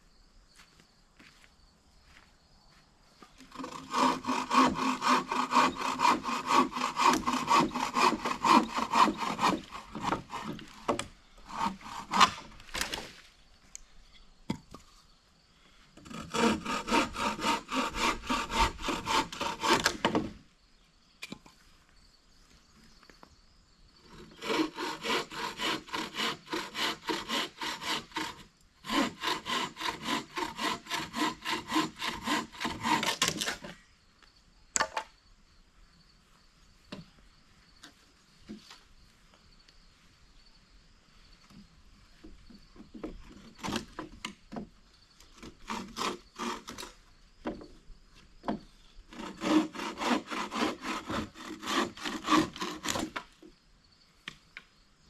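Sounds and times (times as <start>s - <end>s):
hand saw cutting wood: 3.4s - 13.2s, 16.0s - 20.4s, 24.1s - 33.8s, 43.0s - 44.4s, 45.2s - 47.0s, 49.1s - 53.3s.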